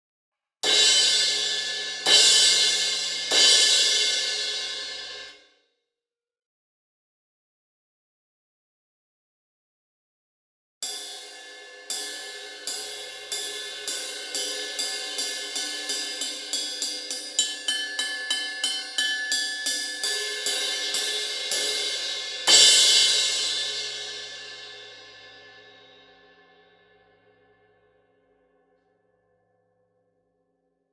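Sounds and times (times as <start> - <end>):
crash cymbal struck: 0.7 - 5.3.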